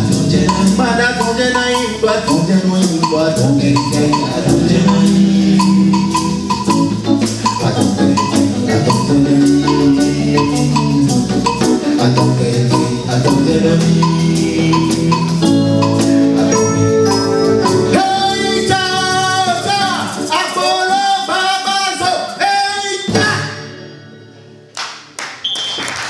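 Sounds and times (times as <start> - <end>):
sustained low instrumental notes: 0.0 - 19.4
steady percussion beat: 0.0 - 22.4
person singing: 0.0 - 23.4.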